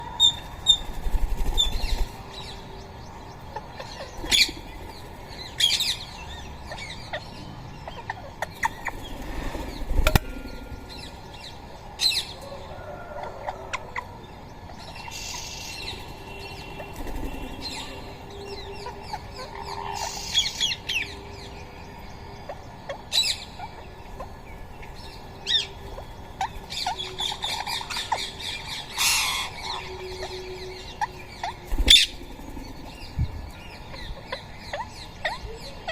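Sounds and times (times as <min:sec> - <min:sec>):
wings flapping: 0:00.6 - 0:02.2, 0:16.8 - 0:17.7
parakeets chirping: 0:03.4 - 0:12.3, 0:21.9 - 0:35.9.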